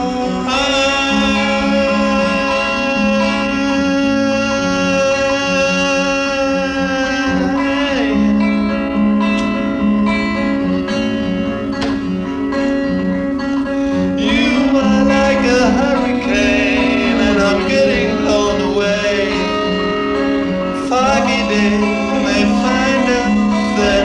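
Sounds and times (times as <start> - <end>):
bass line: 0.0 - 24.0
plucked guitar: 0.0 - 24.0
sliding lead notes: 0.0 - 24.0.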